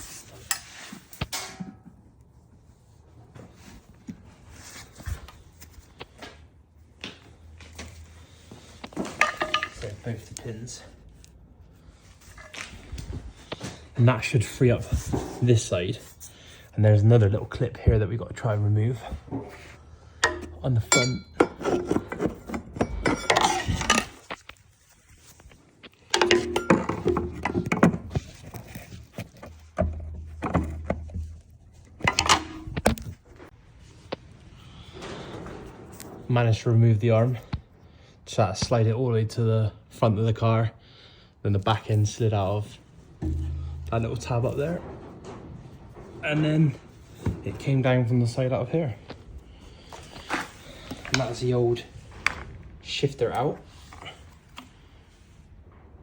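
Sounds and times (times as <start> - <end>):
low hum: 43.0 - 47.1
sharp metallic knocks: 43.2 - 45.4.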